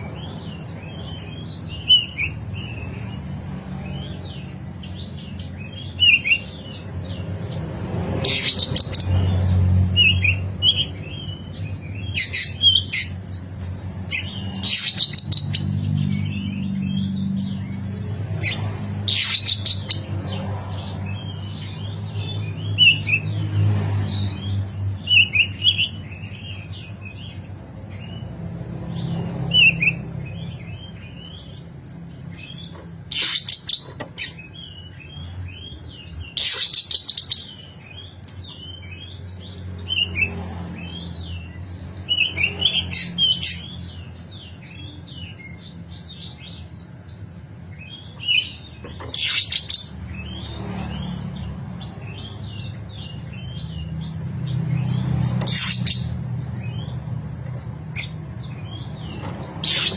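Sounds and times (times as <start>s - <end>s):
bird harsh rasping calls: 55.4s - 56.2s, 58.8s - 59.9s.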